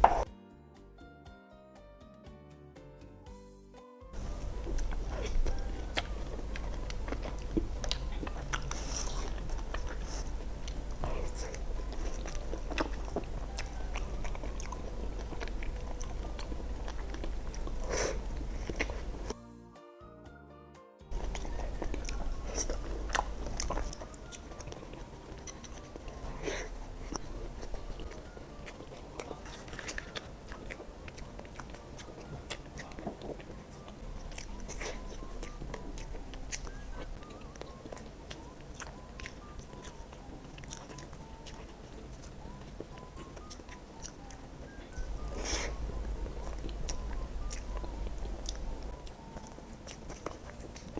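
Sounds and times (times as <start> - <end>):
steady low hum: 0.0 - 0.3, 4.2 - 19.4, 21.1 - 50.9
person chewing: 4.2 - 19.4, 21.1 - 50.9.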